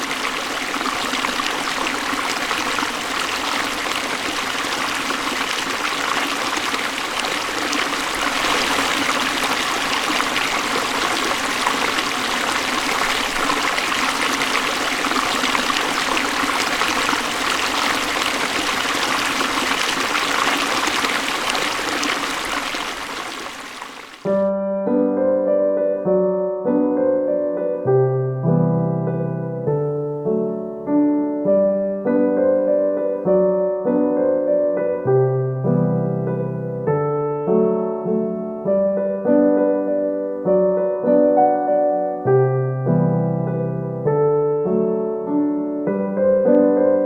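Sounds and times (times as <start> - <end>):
river flowing over stones: 0.0 - 24.3
piano music: 24.3 - 47.0.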